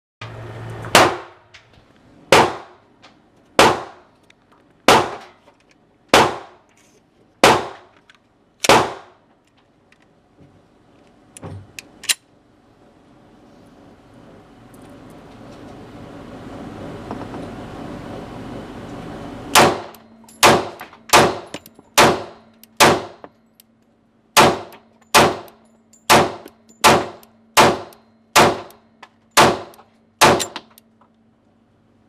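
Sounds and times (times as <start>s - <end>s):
gunshots: 1.0s - 1.4s, 2.3s - 2.8s, 3.6s - 4.0s, 4.9s - 5.2s, 6.2s - 6.6s, 7.4s - 7.9s, 8.7s - 9.2s, 19.6s - 23.2s, 24.4s - 25.5s, 26.1s - 28.7s, 29.4s - 30.6s.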